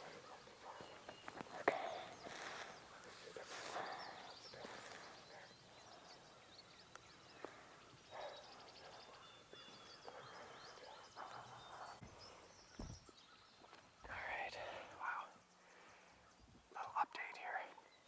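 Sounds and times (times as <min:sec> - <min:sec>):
soft rustles: 0:00.0 - 0:05.2
songbirds chirping: 0:00.0 - 0:18.0.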